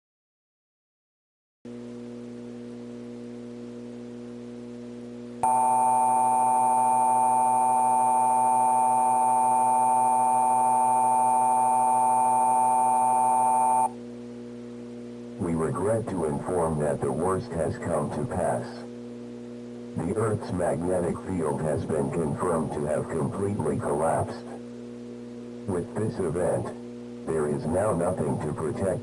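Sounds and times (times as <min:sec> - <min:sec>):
low steady hum: 0:01.7 - 0:29.0
steady two-tone alarm: 0:05.4 - 0:14.0.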